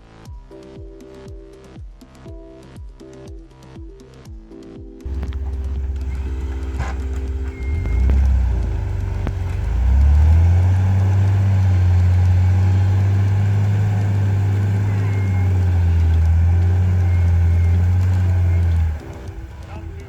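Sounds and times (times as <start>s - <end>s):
vehicle engine droning: 5.1s - 20.0s.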